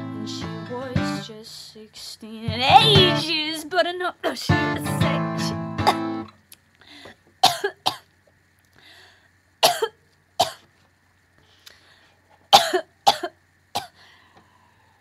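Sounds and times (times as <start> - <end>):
woman coughing: 7.4 - 8.0, 9.6 - 10.6, 12.6 - 14.0.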